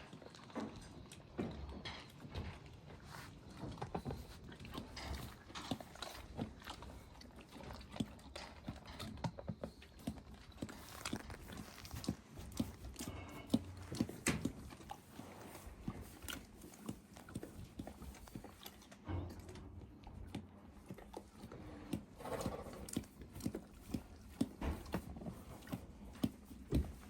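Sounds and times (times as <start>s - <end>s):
horse crunching hard candy: 10.0s - 14.7s.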